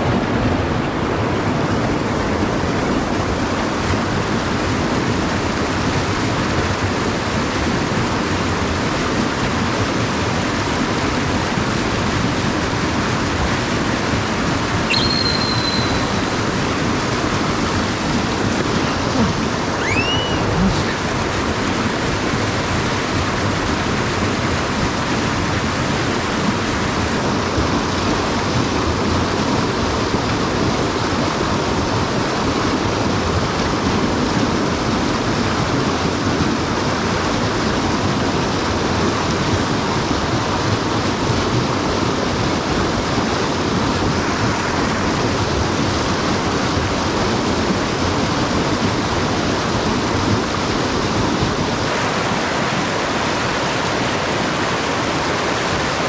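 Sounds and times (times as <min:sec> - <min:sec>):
stream water rushing: 0:49.2 - 0:56.0.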